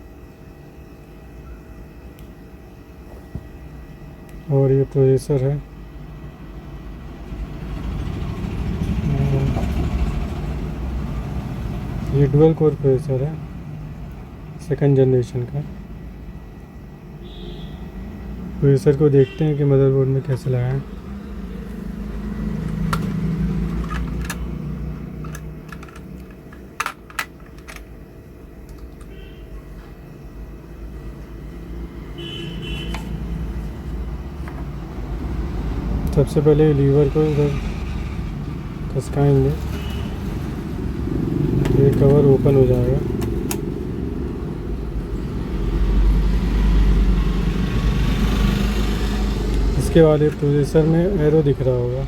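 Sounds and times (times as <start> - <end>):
computer hardware clicks and knocks: 22.6 - 27.9.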